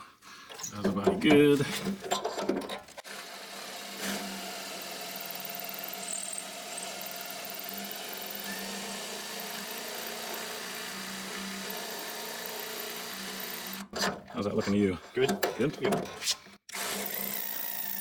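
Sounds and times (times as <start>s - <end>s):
electric drill boring through metal: 3.0s - 13.9s, 16.7s - 18.0s.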